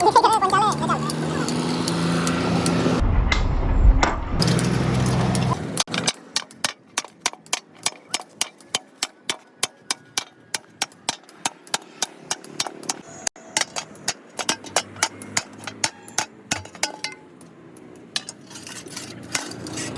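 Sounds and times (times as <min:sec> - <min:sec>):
sharp tapping on hard object: 0:05.8 - 0:17.5.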